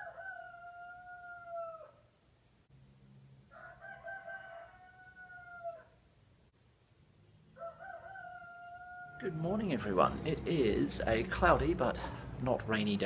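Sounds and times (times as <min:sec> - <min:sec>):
rooster crowing: 0:00.0 - 0:02.0, 0:03.5 - 0:06.0, 0:07.6 - 0:09.4.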